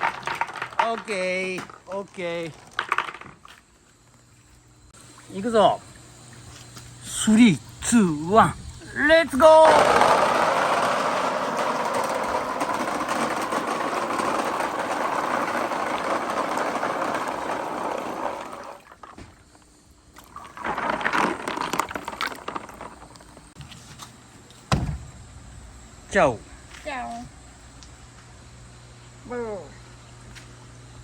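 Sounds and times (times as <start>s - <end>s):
marbles rattling down a track: 0.0s - 3.2s, 9.4s - 18.8s, 20.4s - 23.3s.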